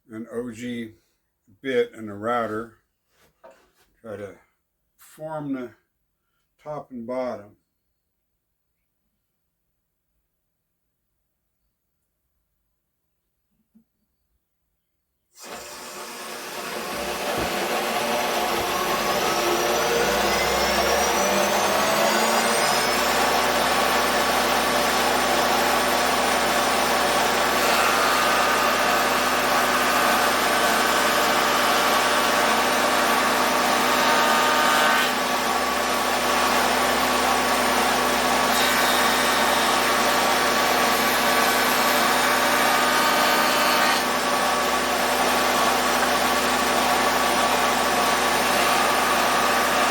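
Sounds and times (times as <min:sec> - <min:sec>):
router motor running: 0:15.4 - 0:49.9.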